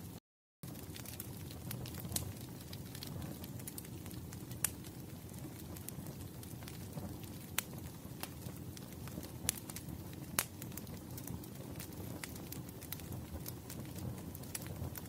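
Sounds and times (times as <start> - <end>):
sharp fire pops: 0.6 - 15.0
wood fire crackling: 0.6 - 15.0.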